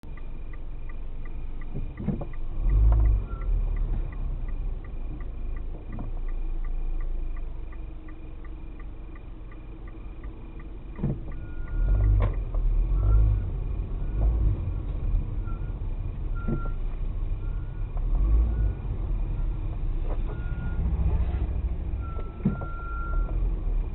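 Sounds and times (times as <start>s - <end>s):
low rumble of car: 0.0s - 23.9s.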